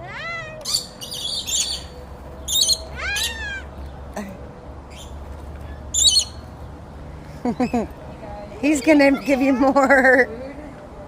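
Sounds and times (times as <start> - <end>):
parrots screeching: 0.0 - 3.8, 5.9 - 6.4.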